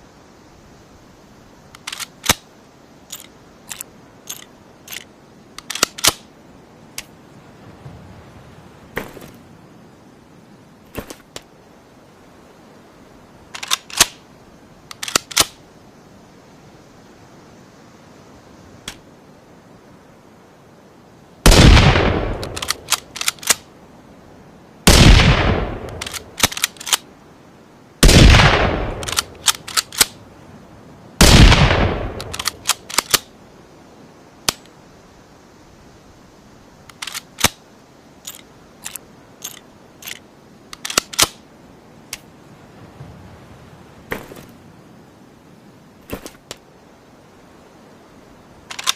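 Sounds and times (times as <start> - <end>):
rifle bolt clicks: 1.8 - 2.4, 3.1 - 6.2, 14.9 - 15.6, 22.3 - 23.6, 25.8 - 27.0, 29.0 - 30.2, 32.1 - 33.3, 36.9 - 37.6, 38.2 - 41.4
rifle gunshots: 21.5 - 22.6, 24.9 - 26.5, 28.0 - 29.3, 31.2 - 32.5.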